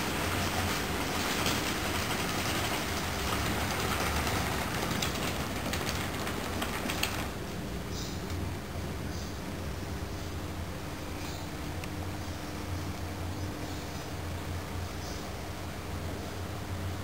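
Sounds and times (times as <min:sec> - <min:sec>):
wheels clicking over rail joints: 0:00.0 - 0:07.4
model train rolling on track: 0:00.0 - 0:07.6.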